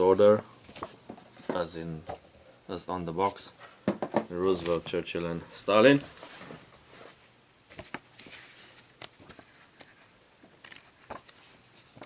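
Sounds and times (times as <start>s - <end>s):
paper pages rustling: 0.6s - 1.7s, 4.4s - 5.0s, 5.9s - 12.0s.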